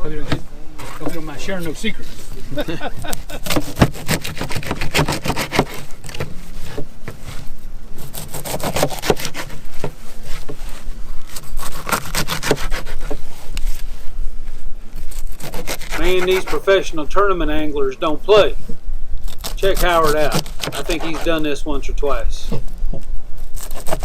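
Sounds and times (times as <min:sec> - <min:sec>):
knife sawing on cutting board: 0:03.4 - 0:05.9, 0:08.0 - 0:09.6, 0:11.3 - 0:13.2, 0:15.1 - 0:16.6, 0:19.4 - 0:21.4, 0:23.6 - 0:24.0.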